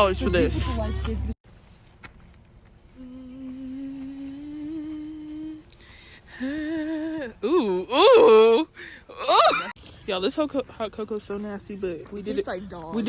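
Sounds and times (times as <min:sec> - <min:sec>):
woman humming: 0:03.0 - 0:09.6.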